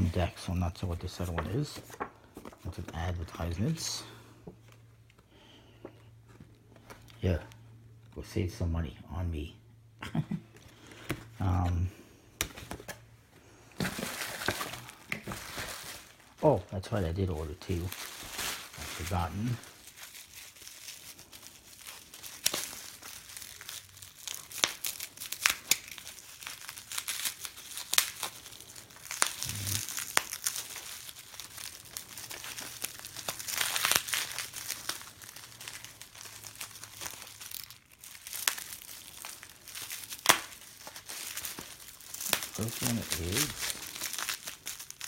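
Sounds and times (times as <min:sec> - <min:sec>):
packaging crinkling and rustling: 0:00.0 - 0:05.2, 0:12.4 - 0:45.0.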